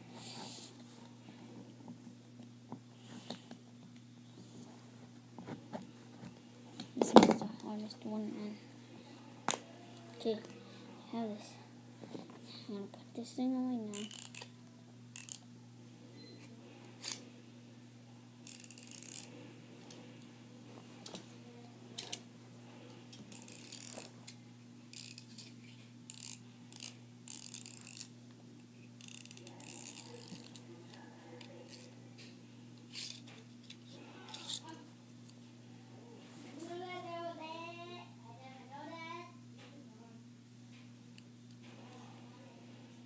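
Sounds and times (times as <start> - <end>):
steady low hum: 0.0 - 43.0.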